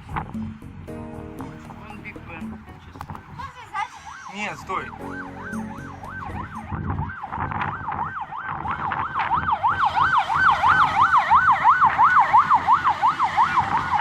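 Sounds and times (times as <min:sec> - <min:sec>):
siren yelping: 0:03.5 - 0:14.0.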